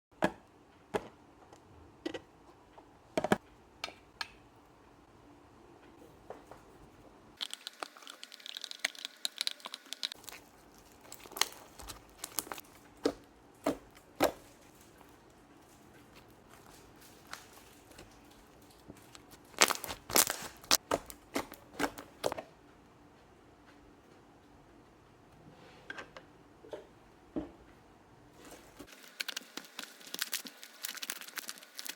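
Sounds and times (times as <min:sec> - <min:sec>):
slime clicking and crackling: 0:07.4 - 0:12.7, 0:17.3 - 0:22.0, 0:28.9 - 0:31.9.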